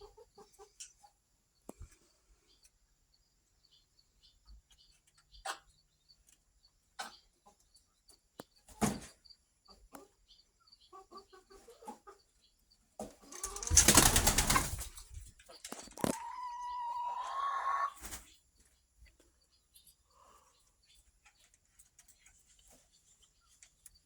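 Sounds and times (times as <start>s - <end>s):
chickens clucking: 0.0s - 2.7s, 4.4s - 24.0s
wing flapping: 13.3s - 16.2s
long drawn-out chicken call: 16.0s - 18.0s.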